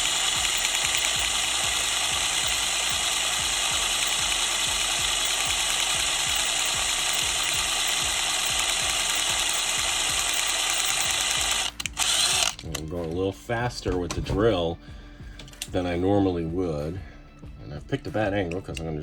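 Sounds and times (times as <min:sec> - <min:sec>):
small drill drilling metal: 0:00.0 - 0:12.7.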